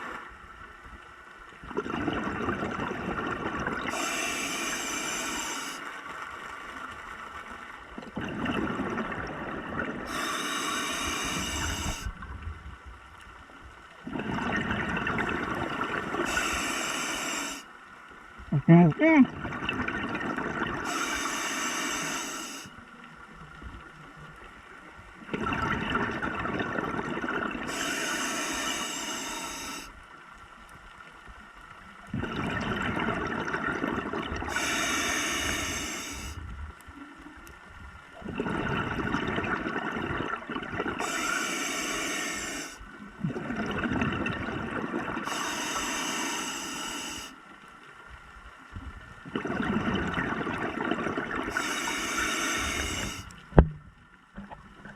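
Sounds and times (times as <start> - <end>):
diver breathing through regulator: 3.9 - 5.9, 10.0 - 12.2, 16.2 - 17.7, 20.8 - 22.8, 27.6 - 30.0, 34.4 - 36.4, 41.0 - 42.9, 45.2 - 47.4, 51.5 - 53.4
air bubbling underwater: 14.1 - 16.5, 32.1 - 36.3, 38.2 - 41.2, 43.2 - 45.4, 49.2 - 53.8.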